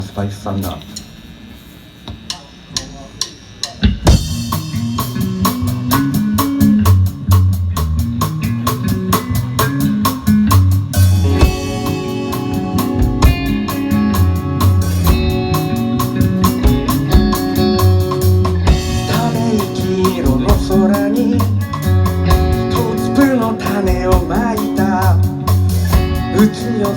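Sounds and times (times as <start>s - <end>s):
drum kit quick beat: 2.1s - 26.9s
bass: 3.8s - 26.9s
sustained guitar chords: 8.1s - 26.9s.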